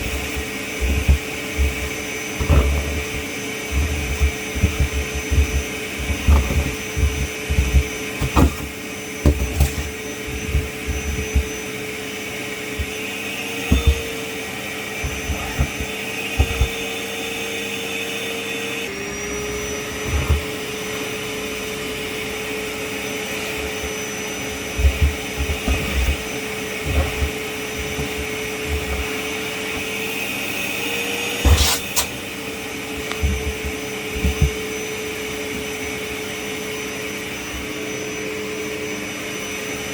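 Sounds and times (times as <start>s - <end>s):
low thumps and knocks: 0.0s - 11.6s
vacuum cleaner motor whine: 0.0s - 39.9s.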